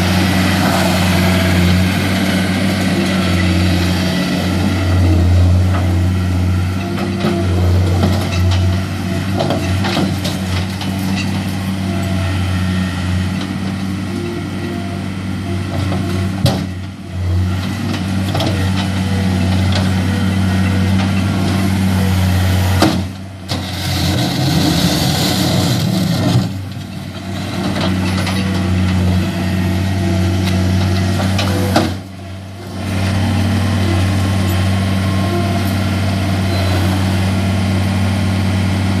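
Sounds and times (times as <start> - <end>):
diesel engine running: 0.0 - 39.0
hissing rush: 0.2 - 3.0.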